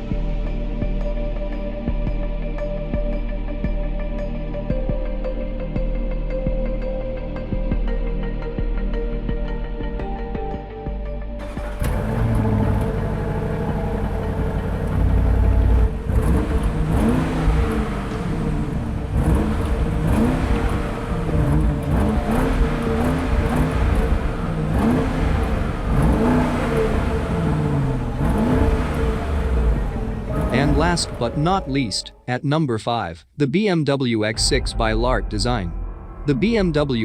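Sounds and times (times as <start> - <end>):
car engine revving: 11.4 - 31.9.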